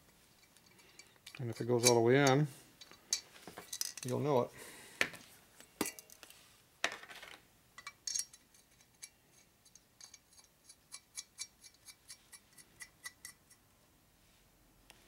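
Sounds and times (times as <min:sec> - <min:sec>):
metal scrape: 0:00.7 - 0:03.9.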